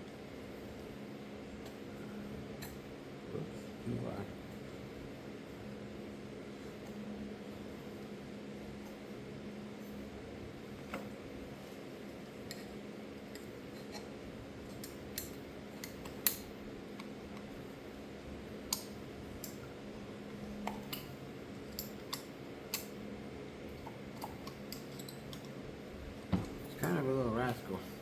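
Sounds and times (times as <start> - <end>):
small metal clicks and taps: 14.7 - 17.5.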